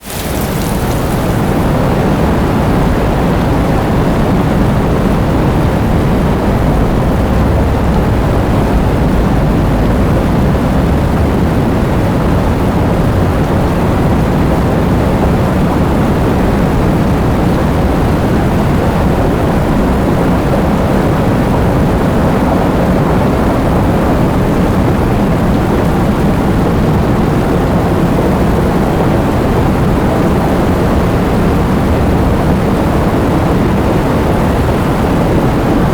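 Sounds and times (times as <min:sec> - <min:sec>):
heavy rain: 0:00.0 - 0:35.9
low rumble: 0:00.8 - 0:15.4.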